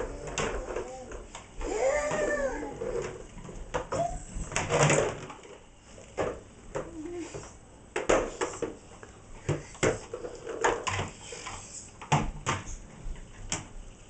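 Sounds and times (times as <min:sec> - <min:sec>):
child vocal sounds: 0:00.0 - 0:03.1.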